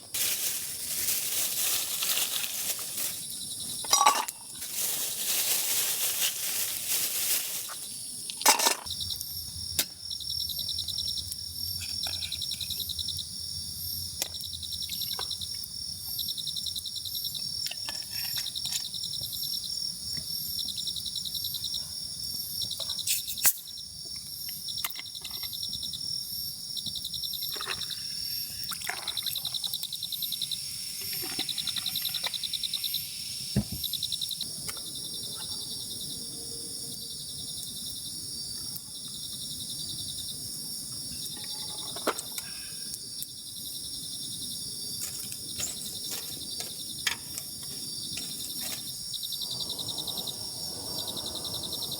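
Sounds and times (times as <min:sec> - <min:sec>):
crickets and insects chirping: 0:00.0 - 0:51.9
steady high insect buzz: 0:42.5 - 0:51.9.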